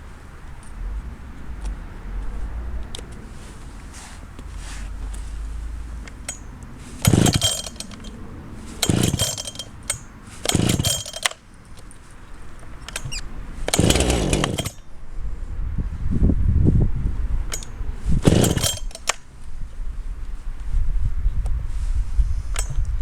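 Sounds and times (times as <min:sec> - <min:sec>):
chainsaw engine revving: 0:06.1 - 0:11.4, 0:12.9 - 0:14.9, 0:17.5 - 0:19.2.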